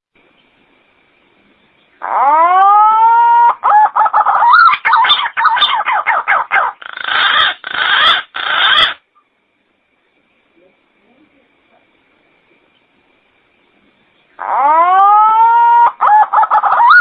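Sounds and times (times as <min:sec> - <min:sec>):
bird call: 0:01.8 - 0:09.3, 0:14.2 - 0:17.0.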